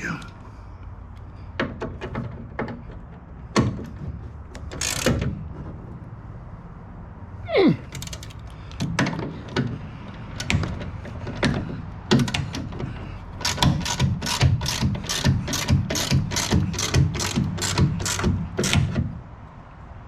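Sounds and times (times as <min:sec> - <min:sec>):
hand ratchet clicking: 0:04.5 - 0:05.3, 0:07.9 - 0:08.9, 0:09.5 - 0:19.0.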